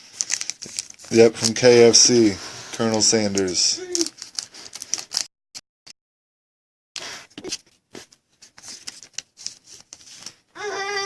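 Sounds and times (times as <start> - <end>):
trading cards being flipped: 7.4 - 7.6.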